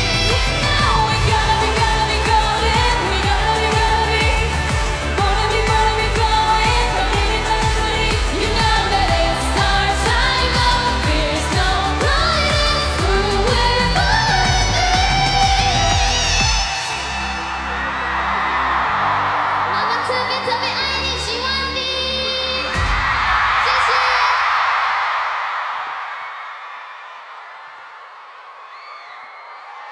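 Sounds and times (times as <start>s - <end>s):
dance beat: 0.0s - 16.7s
woman singing: 0.0s - 17.4s.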